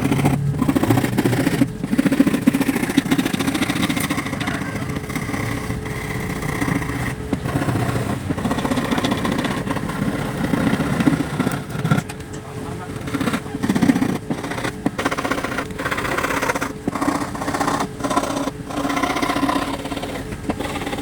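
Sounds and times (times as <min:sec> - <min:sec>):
hand saw cutting plywood: 0:00.0 - 0:12.1, 0:12.8 - 0:21.0.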